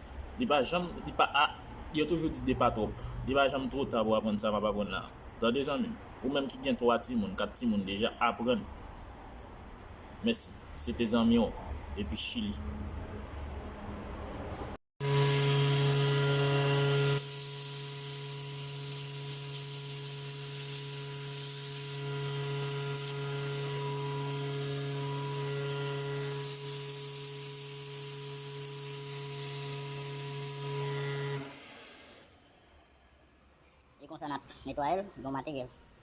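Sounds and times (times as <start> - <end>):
machine humming and hissing: 15.0 - 32.3.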